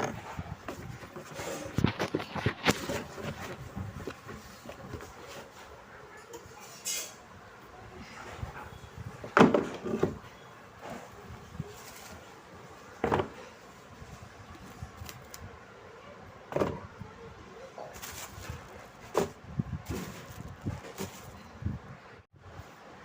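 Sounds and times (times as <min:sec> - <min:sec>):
refrigerator shelves knocking and clunking: 0:09.1 - 0:10.3, 0:13.0 - 0:13.4, 0:16.5 - 0:16.9, 0:17.9 - 0:21.5.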